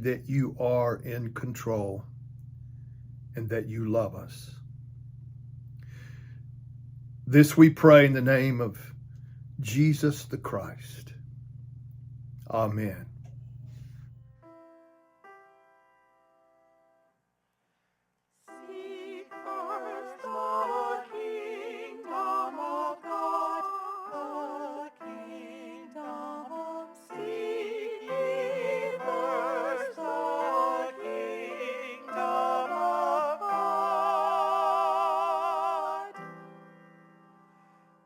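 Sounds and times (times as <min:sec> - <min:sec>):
piano accompaniment: 0:18.5 - 0:38.0
person singing with vibrato: 0:18.6 - 0:36.3.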